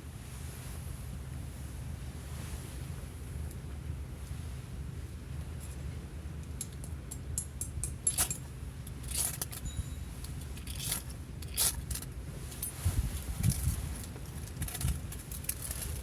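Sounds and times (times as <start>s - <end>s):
low steady rumble: 0.0s - 16.0s
small metal items clinking: 7.4s - 12.8s.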